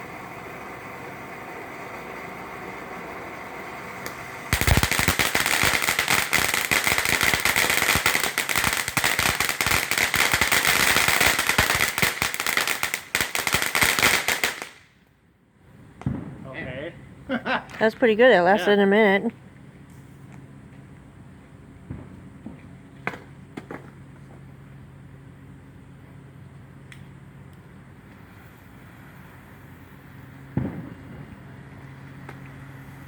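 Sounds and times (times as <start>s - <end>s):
firework fountain hissing: 0.0s - 15.0s, 27.2s - 33.0s
firework crackling: 0.0s - 15.1s, 19.8s - 33.0s.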